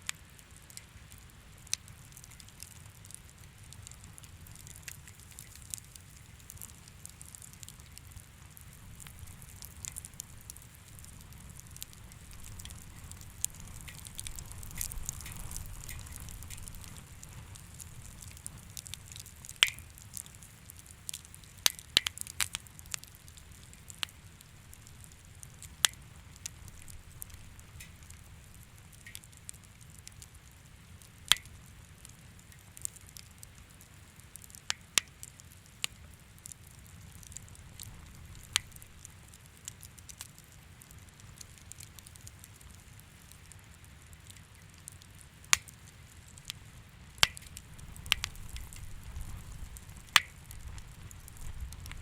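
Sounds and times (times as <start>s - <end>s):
pops and snaps of burning wood: 0.0s - 52.0s
low steady rumble: 46.8s - 52.0s.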